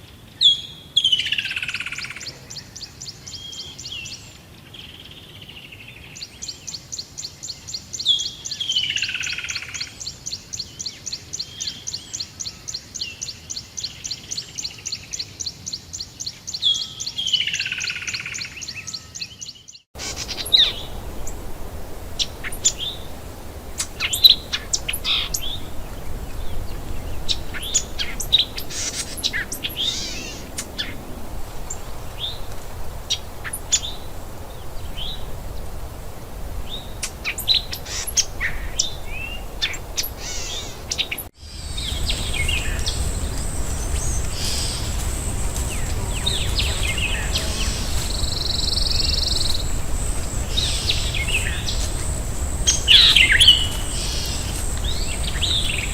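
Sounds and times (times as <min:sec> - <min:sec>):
forest birds chirping: 0:00.0 - 0:55.9.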